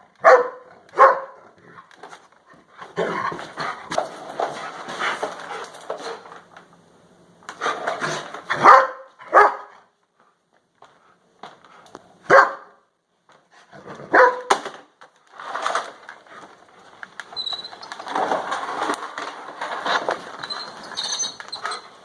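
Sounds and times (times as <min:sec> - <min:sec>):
dog barking: 0:00.2 - 0:01.4, 0:08.5 - 0:09.8, 0:12.2 - 0:12.8, 0:14.0 - 0:14.5.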